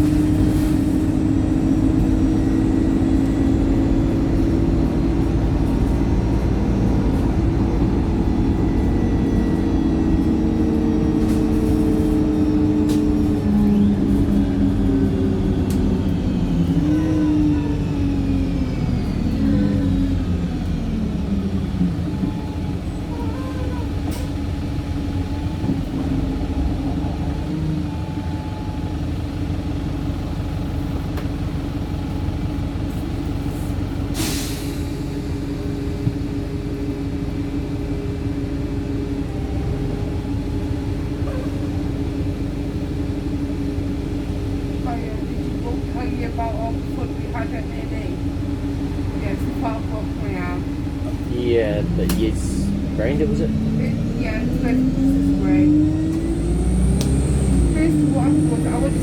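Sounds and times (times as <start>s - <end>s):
bus engine droning: 0.0s - 59.0s
air brake hiss: 33.6s - 35.0s.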